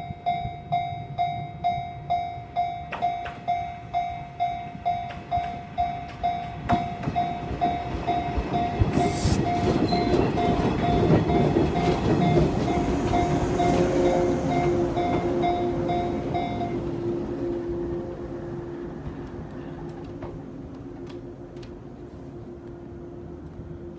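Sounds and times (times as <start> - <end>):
level crossing warning bell: 0.0 - 19.3
train wheels clattering on rails: 2.6 - 4.1, 4.7 - 16.9.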